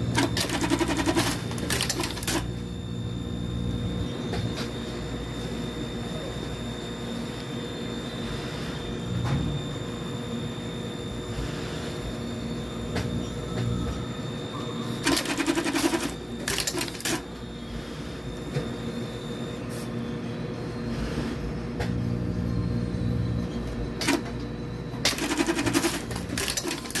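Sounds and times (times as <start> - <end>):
steady machine hum: 0.0 - 27.0
machine clattering strokes: 15.0 - 17.2, 25.1 - 27.0.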